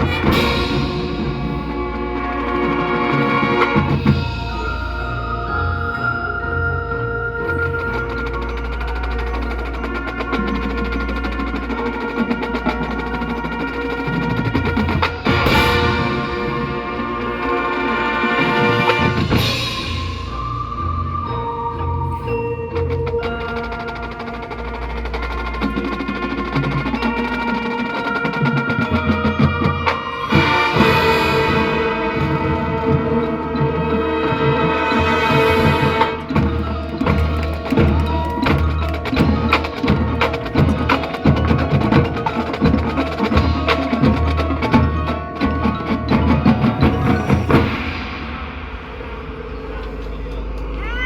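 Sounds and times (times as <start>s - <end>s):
marching band playing: 0.0s - 49.6s
fast percussion ticking: 0.0s - 51.0s
brass chords: 7.1s - 20.4s, 23.6s - 50.4s.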